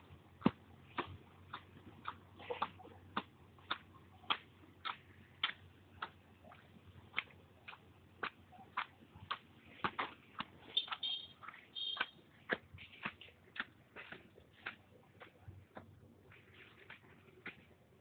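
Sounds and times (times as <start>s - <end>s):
high chirp: 10.8s - 12.2s.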